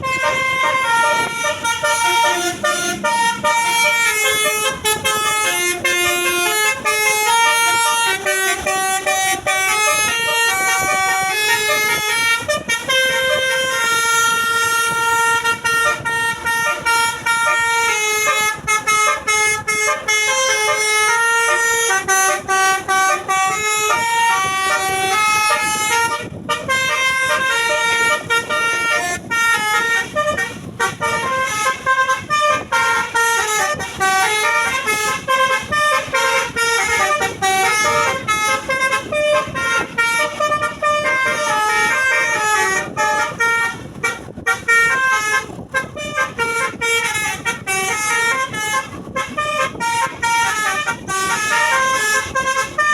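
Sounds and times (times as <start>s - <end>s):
bus horn playing a tune: 0.0s - 52.9s.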